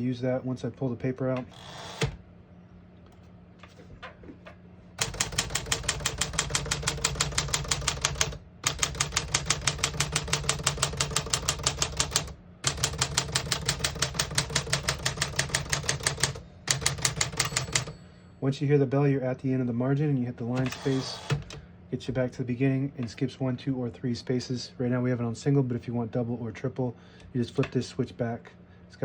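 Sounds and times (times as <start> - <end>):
typewriter typing: 5.0 - 17.9, 20.6 - 21.6.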